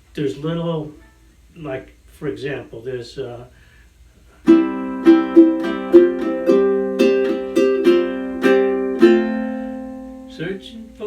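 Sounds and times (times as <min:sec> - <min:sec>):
ukulele strumming chords: 0:04.4 - 0:11.0.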